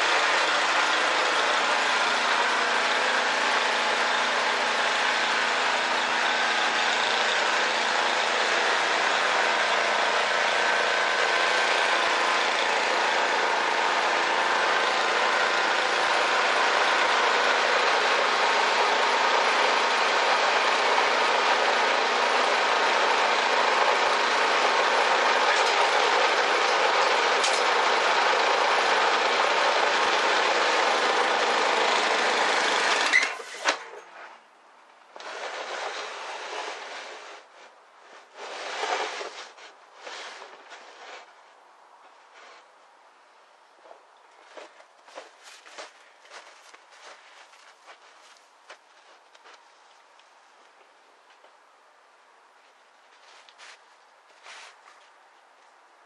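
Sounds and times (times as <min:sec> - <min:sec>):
snowblower running: 0:00.0 - 0:34.3, 0:35.2 - 0:41.3, 0:44.5 - 0:50.0.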